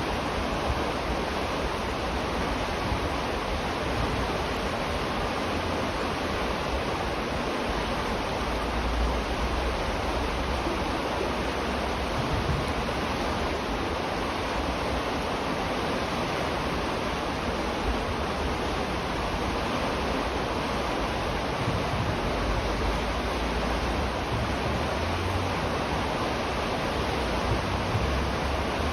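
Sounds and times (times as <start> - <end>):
river water rushing: 0.0 - 28.9
low rumbles: 19.1 - 28.9.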